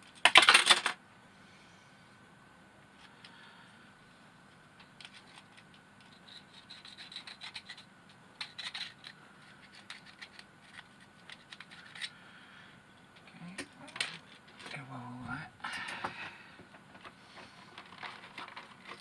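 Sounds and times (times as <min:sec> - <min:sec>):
scratching on plastic: 0:05.0 - 0:12.1, 0:16.9 - 0:19.0.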